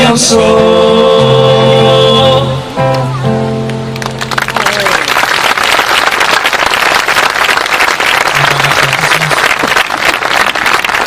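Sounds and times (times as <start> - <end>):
audience applauding: 3.6 - 11.0.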